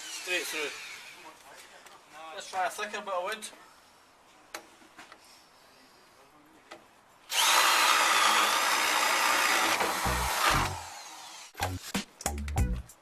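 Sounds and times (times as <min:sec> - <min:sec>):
drill boring into wood: 0:00.0 - 0:01.2, 0:07.3 - 0:11.6.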